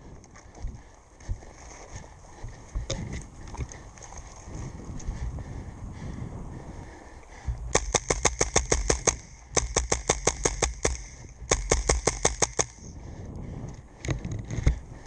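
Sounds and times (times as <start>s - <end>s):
airsoft rifle firing bursts: 7.7s - 12.8s.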